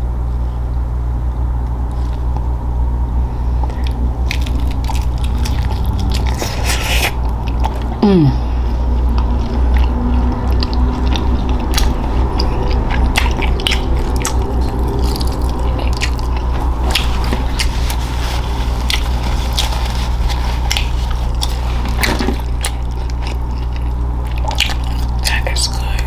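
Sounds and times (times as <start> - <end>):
steady low hum: 0.0 - 26.0
mouth chewing wetly: 3.6 - 8.0, 8.8 - 17.8, 20.7 - 26.0.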